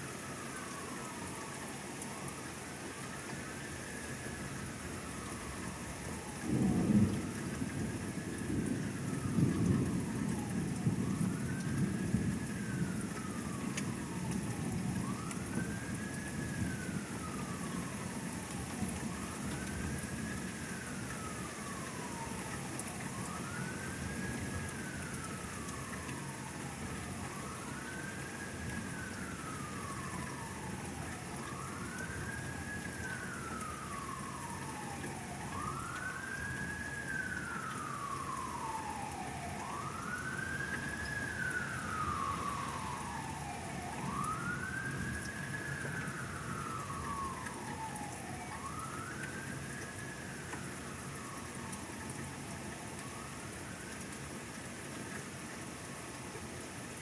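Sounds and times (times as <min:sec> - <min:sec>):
steady rain: 0:00.0 - 0:57.0
siren wailing: 0:00.1 - 0:55.0
thunder rumbling: 0:06.4 - 0:18.2, 0:38.0 - 0:47.2.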